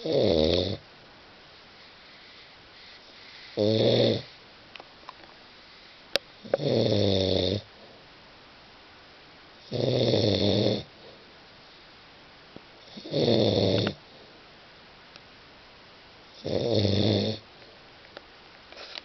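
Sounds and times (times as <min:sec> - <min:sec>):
loud pitched snores: 0:00.0 - 0:00.8, 0:02.2 - 0:04.4, 0:06.4 - 0:07.7, 0:09.6 - 0:10.9, 0:12.8 - 0:14.0, 0:16.3 - 0:17.4.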